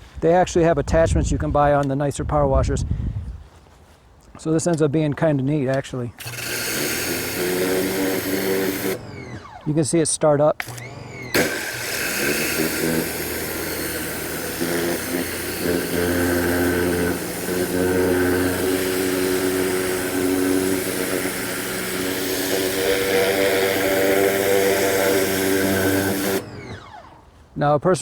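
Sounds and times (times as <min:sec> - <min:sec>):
pressure washer motor hum: 0:06.2 - 0:27.5
water spray hissing: 0:11.3 - 0:26.5.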